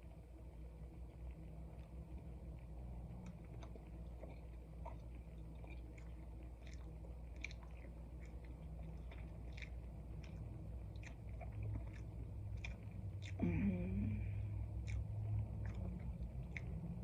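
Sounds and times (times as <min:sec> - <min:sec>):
low hum: 0:00.0 - 0:17.0
close chewing: 0:01.1 - 0:17.0
wet mouth clicks: 0:14.8 - 0:17.0.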